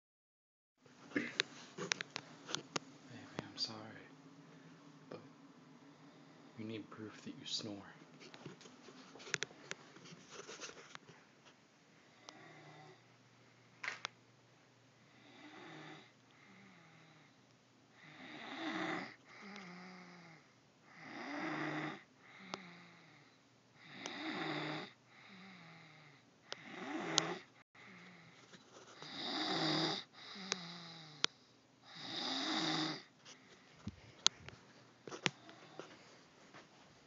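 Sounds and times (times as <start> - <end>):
person snoring loudly: 15.2 - 17.3, 18.0 - 28.2, 29.0 - 31.3, 31.9 - 33.1.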